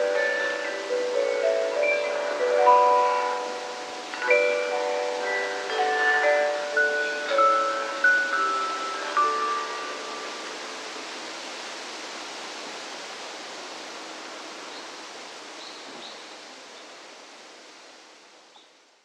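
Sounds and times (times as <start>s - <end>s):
music-box chime notes: 0.0s - 10.4s
outdoor background hiss: 0.0s - 19.0s.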